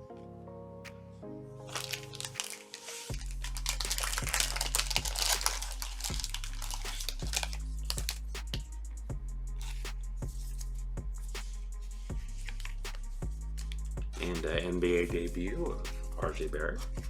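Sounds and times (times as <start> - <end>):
plastic wrapper crinkling and tearing: 1.7 - 8.2.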